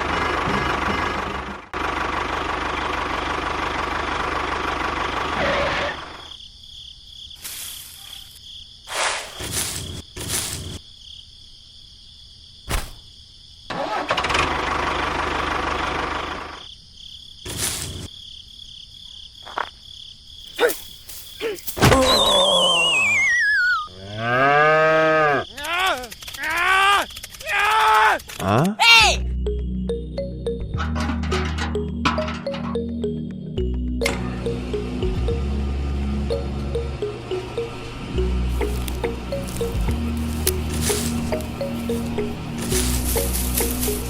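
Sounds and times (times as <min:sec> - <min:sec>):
small tractor engine running: 0:00.0 - 0:06.2, 0:13.7 - 0:16.6, 0:33.7 - 0:44.0.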